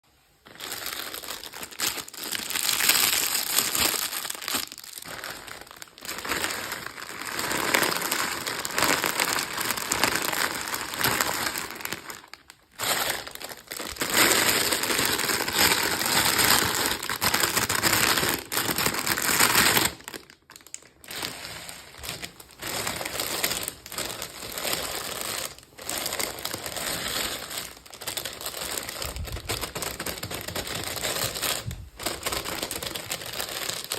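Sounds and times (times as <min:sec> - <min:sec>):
plastic packaging crinkling: 0:00.2 - 0:33.9.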